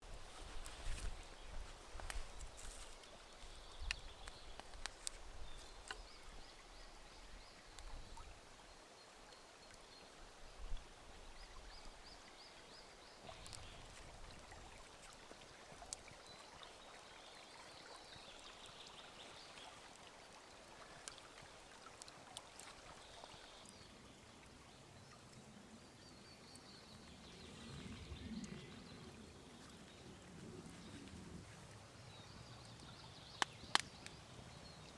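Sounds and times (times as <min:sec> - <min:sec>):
campfire crackling: 0:00.1 - 0:06.4, 0:32.7 - 0:34.2.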